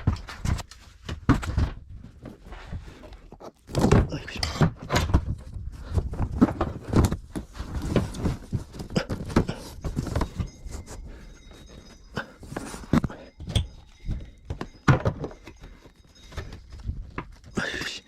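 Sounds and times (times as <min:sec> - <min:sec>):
faint steady high tone: 0:09.2 - 0:18.0.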